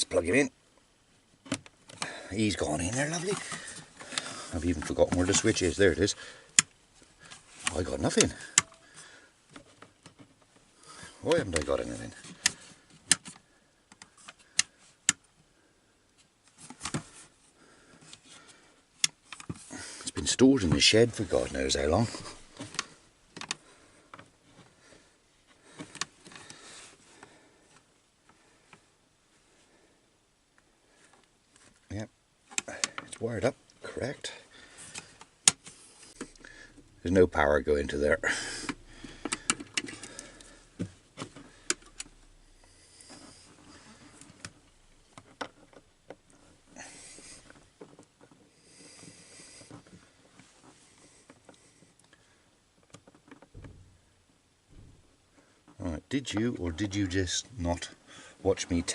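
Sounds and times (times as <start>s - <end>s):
small parts clicking and tapping: 6.5s - 8.8s, 38.2s - 42.4s
soft breathy hisses: 48.5s - 50.1s.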